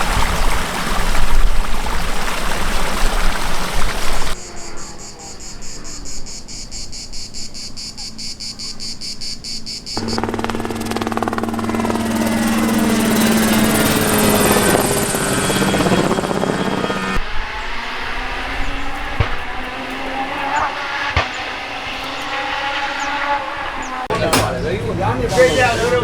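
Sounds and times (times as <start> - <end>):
insects chirping: 0.0 - 25.9
engine running: 9.9 - 26.0.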